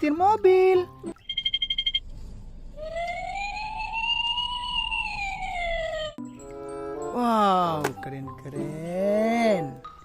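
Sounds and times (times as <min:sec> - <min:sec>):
siren wail: 0:02.8 - 0:06.2.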